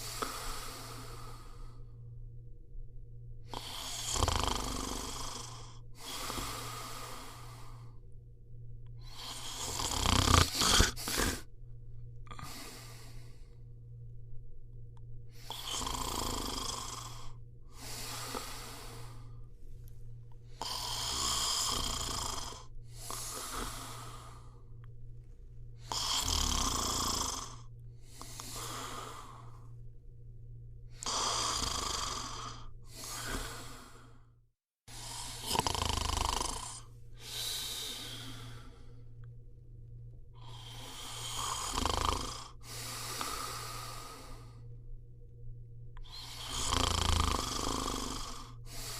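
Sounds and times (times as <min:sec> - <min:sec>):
person snoring: 0:00.0 - 0:02.0, 0:03.4 - 0:08.0, 0:09.0 - 0:11.5, 0:12.2 - 0:13.6, 0:15.3 - 0:19.4, 0:20.5 - 0:24.8, 0:25.8 - 0:29.7, 0:30.9 - 0:34.3, 0:34.9 - 0:39.2, 0:40.4 - 0:44.7, 0:46.0 - 0:48.9.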